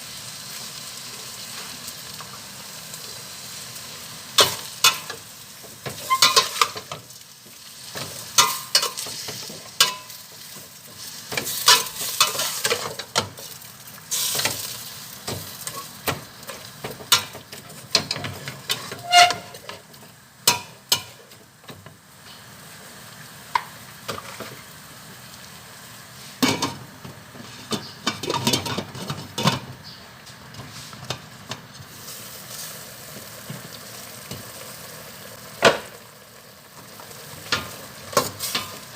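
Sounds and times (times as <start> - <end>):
food sizzling in a pan: 0.0 - 38.9
utensil scraping a pan: 5.8 - 7.0, 10.9 - 13.5, 15.3 - 19.8.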